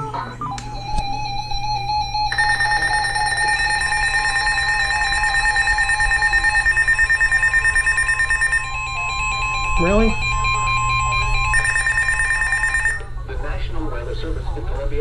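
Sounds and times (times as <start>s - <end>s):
lower wavering tone: 0.4s - 7.5s
shrill emergency alert tone: 0.5s - 13.1s.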